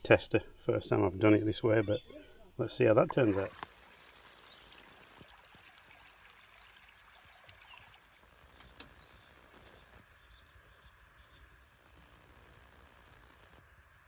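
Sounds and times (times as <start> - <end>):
faint outdoor hiss: 0.0 - 14.0
faint high chirps: 4.3 - 11.4.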